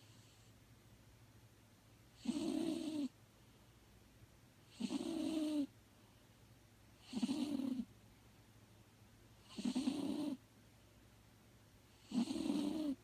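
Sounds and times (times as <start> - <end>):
cat snoring: 2.2 - 3.1, 4.7 - 5.7, 7.0 - 7.9, 9.4 - 10.4, 12.0 - 13.0.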